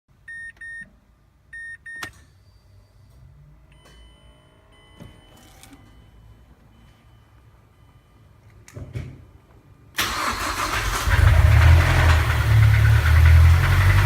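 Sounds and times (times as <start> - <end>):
car warning chime beep: 0.3 - 0.9, 1.5 - 2.1, 3.6 - 8.6.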